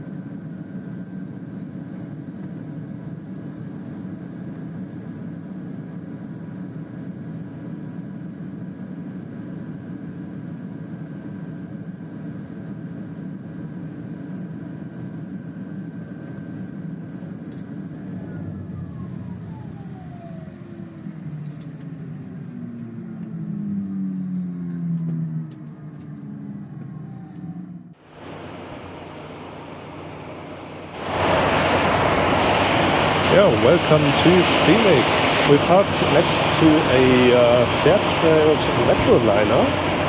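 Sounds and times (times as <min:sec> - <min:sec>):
turboprop engine whine: 0:00.0 - 0:40.0
low engine tone falling: 0:18.1 - 0:21.2, 0:22.2 - 0:40.0.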